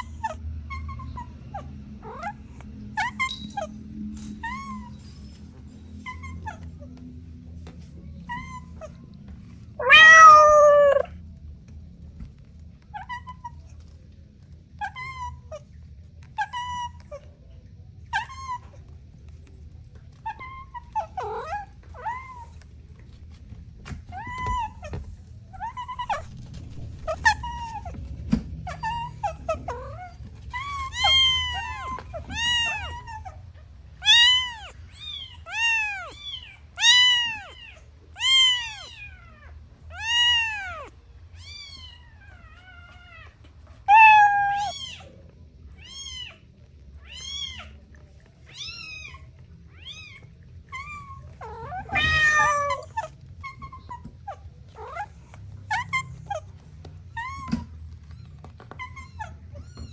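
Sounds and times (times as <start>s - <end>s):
kitten meowing: 9.8s - 11.2s, 28.7s - 33.4s, 34.0s - 45.1s, 47.0s - 59.9s.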